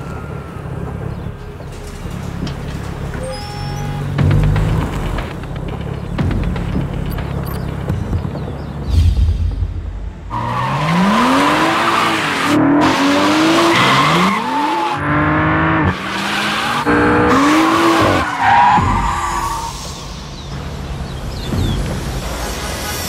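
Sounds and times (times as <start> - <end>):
tyres squealing: 3.1 - 4.2
music with low throb: 4.0 - 10.2
car engine accelerating hard: 10.3 - 19.0.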